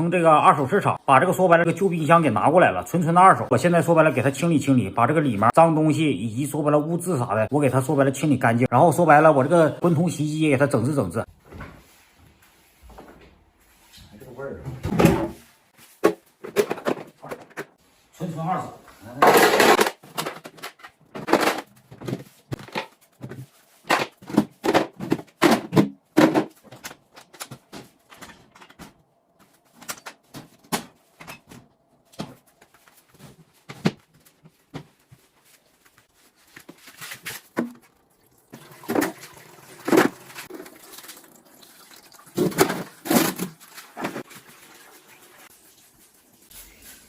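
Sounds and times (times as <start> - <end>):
refrigerator knocks and clatter: 14.8 - 15.4, 21.1 - 26.8.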